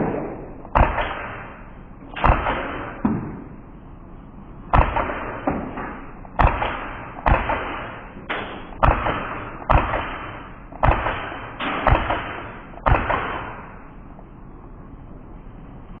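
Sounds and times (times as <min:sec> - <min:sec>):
airsoft pistol shots: 0:00.0 - 0:03.5, 0:04.7 - 0:13.8.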